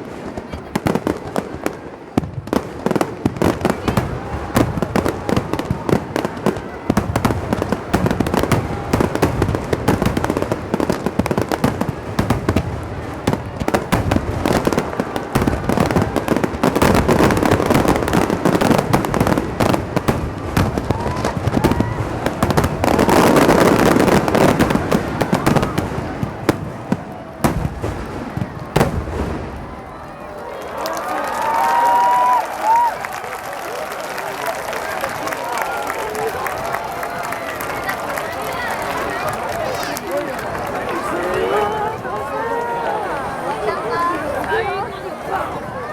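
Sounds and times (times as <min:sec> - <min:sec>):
firework shells booming: 0:00.0 - 0:30.0
sharp firework bangs: 0:00.0 - 0:30.0
fireworks crackling: 0:00.0 - 0:45.9.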